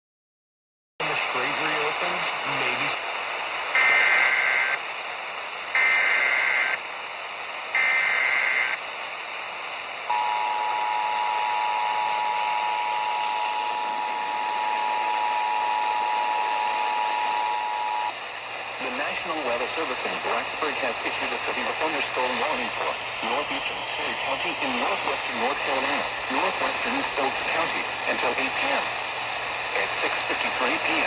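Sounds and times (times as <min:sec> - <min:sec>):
constant hiss: 0:01.0 - 0:31.0
digital data bursts: 0:03.8 - 0:04.8, 0:05.8 - 0:06.8, 0:18.8 - 0:28.9
two-tone attention signal: 0:10.1 - 0:18.1.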